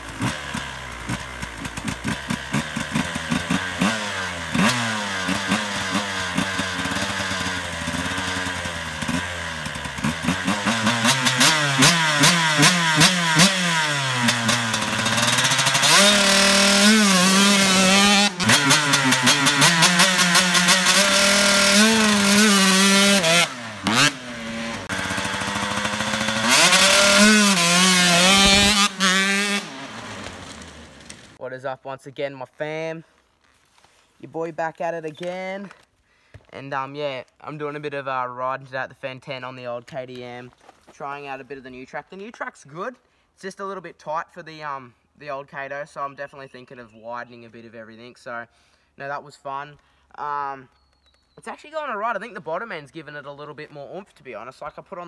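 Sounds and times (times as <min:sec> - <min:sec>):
dirt bike engine revving: 0:00.0 - 0:31.4.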